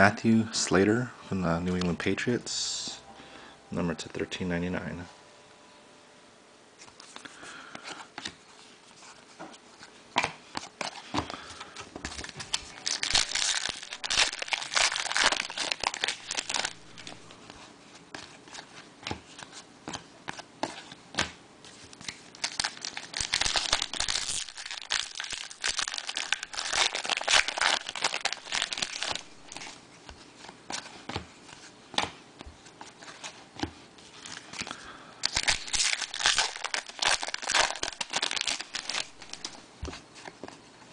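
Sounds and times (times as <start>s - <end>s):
foil wrappers crinkling and tearing: 11.3s - 17.4s, 21.9s - 29.8s, 34.2s - 39.6s.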